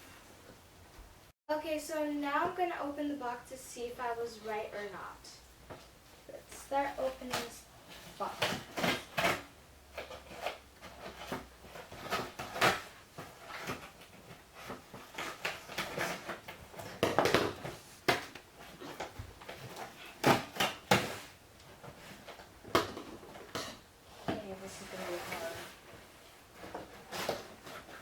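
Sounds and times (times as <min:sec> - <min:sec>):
cardboard rustling and scraping: 0:06.5 - 0:28.0.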